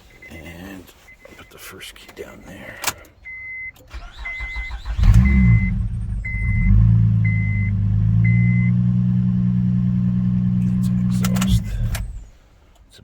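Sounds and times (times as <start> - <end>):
car engine starting and idling: 1.0 - 12.9
warning chime beeping: 3.3 - 8.8.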